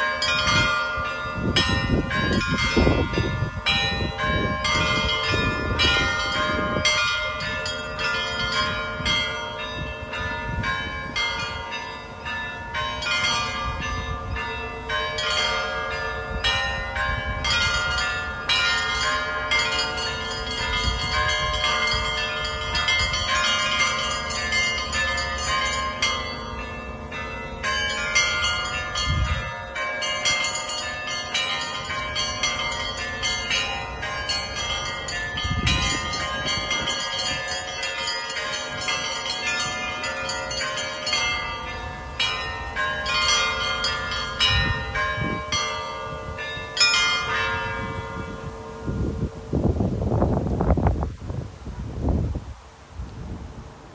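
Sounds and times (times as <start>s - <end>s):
small church bells struck rhythmically: 0.0s - 51.0s
large bells ringing: 0.0s - 51.4s.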